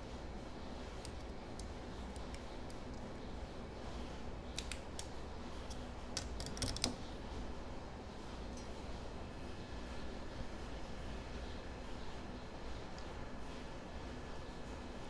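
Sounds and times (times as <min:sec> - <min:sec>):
small tools clicking and tapping: 0:01.0 - 0:03.2, 0:04.5 - 0:07.0.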